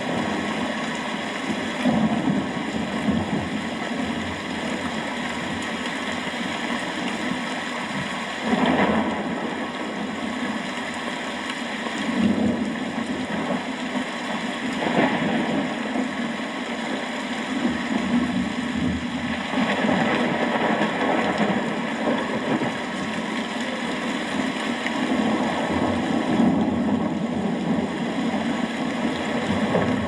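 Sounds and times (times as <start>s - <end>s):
thunder rumbling: 0.0s - 5.8s, 7.9s - 10.4s, 17.6s - 23.4s, 24.4s - 30.0s
steady rain: 0.0s - 30.0s.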